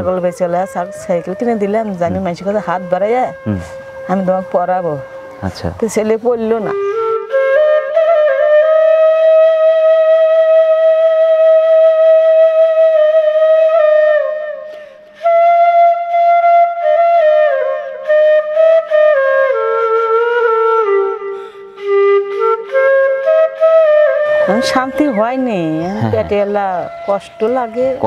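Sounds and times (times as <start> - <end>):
slow flute-like melody: 0.0 - 28.0.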